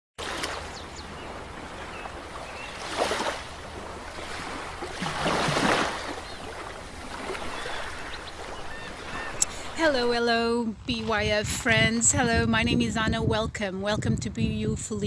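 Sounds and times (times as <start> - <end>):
ocean waves surging on shore: 0.2 - 10.2.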